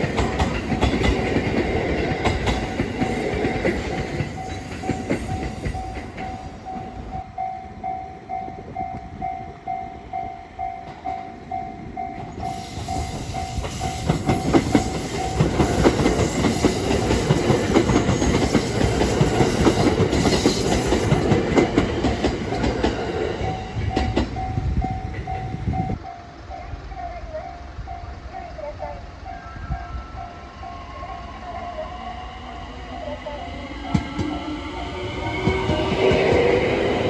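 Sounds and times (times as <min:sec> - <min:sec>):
train wheels clacking over rail joints: 0:00.0 - 0:06.9, 0:12.3 - 0:25.4.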